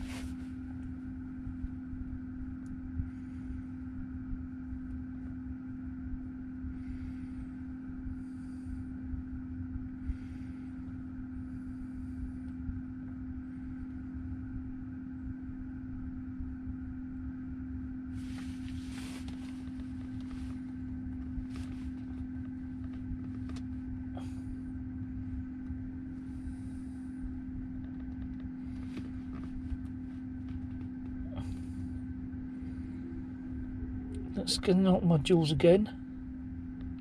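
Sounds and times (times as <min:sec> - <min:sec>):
low uneven rumble: 0:00.0 - 0:37.0
mechanical hum: 0:00.0 - 0:37.0
rustles and clicks: 0:18.2 - 0:24.0, 0:27.7 - 0:31.2.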